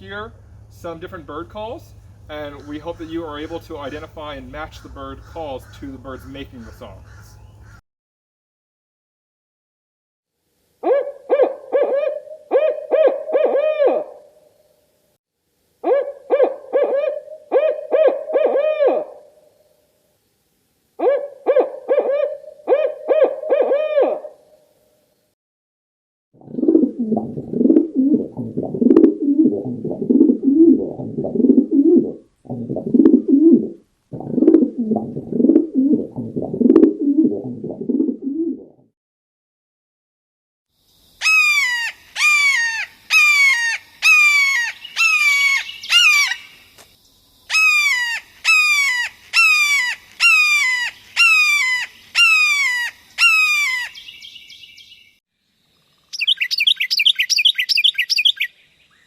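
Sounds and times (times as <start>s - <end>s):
low rapid pulsing bird calls: 0.0s - 7.8s, 40.9s - 59.0s
down-slurred whistled bird notes: 56.1s - 59.0s.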